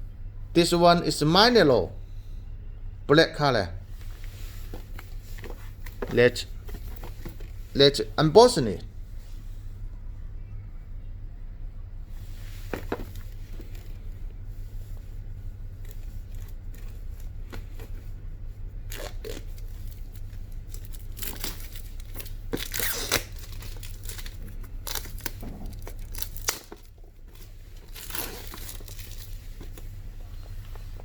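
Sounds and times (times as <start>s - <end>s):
steady low hum: 0.0s - 31.0s
packaging tearing and crinkling: 18.9s - 29.4s.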